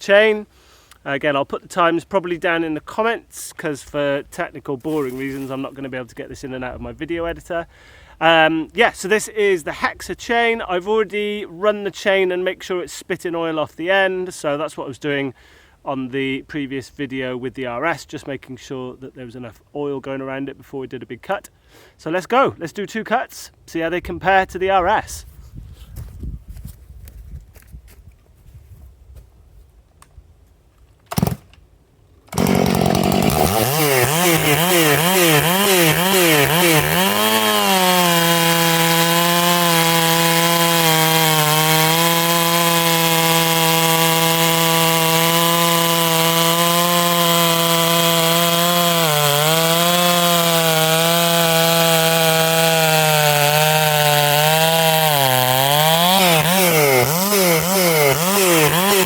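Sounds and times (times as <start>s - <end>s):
chainsaw cutting wood: 4.9s - 5.7s, 31.1s - 31.6s, 32.3s - 59.0s.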